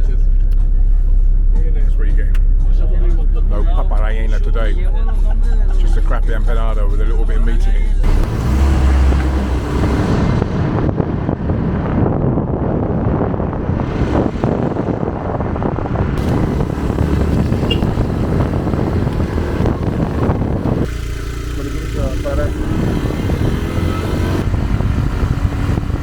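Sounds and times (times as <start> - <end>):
vehicle engine rumble: 0.0 - 26.0
road noise: 7.6 - 26.0
wind buffeting microphone: 8.0 - 26.0.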